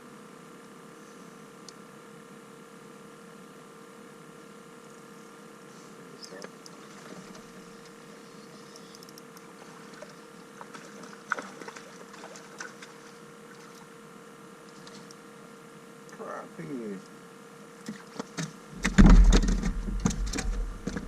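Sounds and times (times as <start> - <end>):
steady hum: 0.0 - 21.0
fishing gear knocking: 18.8 - 21.0.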